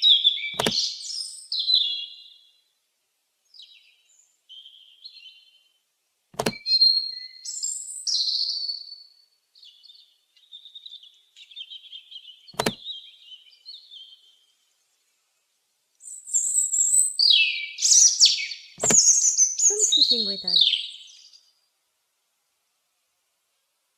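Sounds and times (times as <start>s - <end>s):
robin chirping and trilling: 0.0s - 2.6s, 3.5s - 5.8s, 6.5s - 14.7s, 16.0s - 21.5s
sharp clicks: 0.6s - 0.8s, 6.4s - 6.6s, 12.6s - 12.8s, 18.8s - 19.1s.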